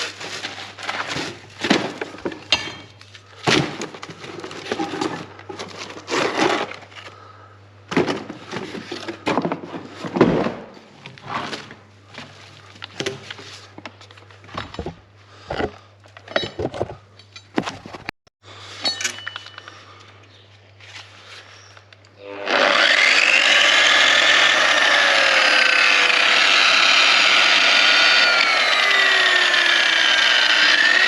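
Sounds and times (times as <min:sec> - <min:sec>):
things being handled: 0:00.0 - 0:07.3, 0:07.9 - 0:18.1, 0:18.8 - 0:22.1.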